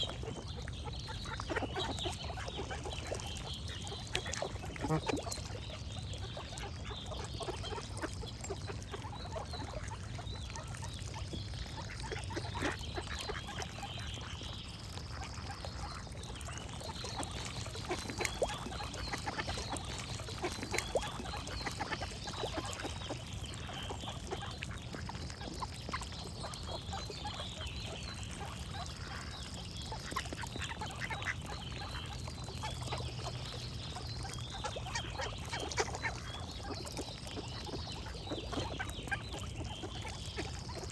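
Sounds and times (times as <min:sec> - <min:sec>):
ducks quacking: 0:00.0 - 0:05.6.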